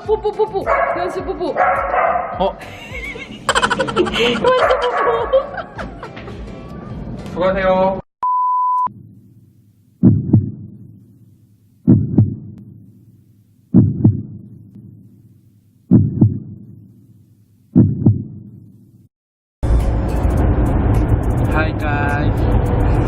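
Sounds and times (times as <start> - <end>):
heartbeat thumps: 10.0 - 11.2, 11.8 - 13.0, 13.7 - 15.2, 15.9 - 17.0, 17.7 - 18.6.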